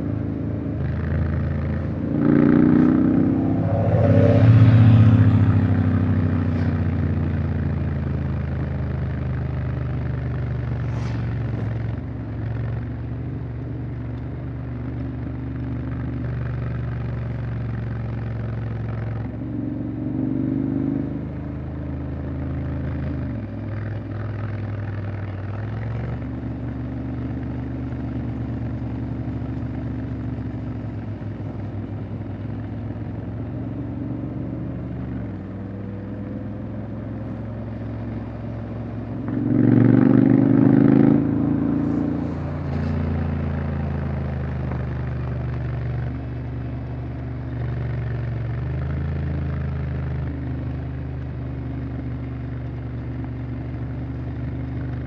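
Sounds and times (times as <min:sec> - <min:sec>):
motorcycle engine revving: 0:00.0 - 0:13.2, 0:15.7 - 0:53.0.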